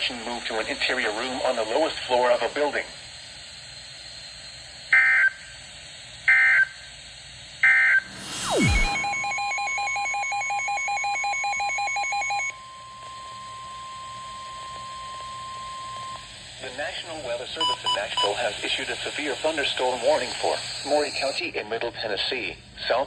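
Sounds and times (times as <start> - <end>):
hiss with falling tone: 0.1 - 10.8, 16.1 - 21.5
rapid alarm beeping: 7.7 - 21.4
steady warning alert tone: 8.0 - 12.5
screeching data bursts: 8.0 - 21.4.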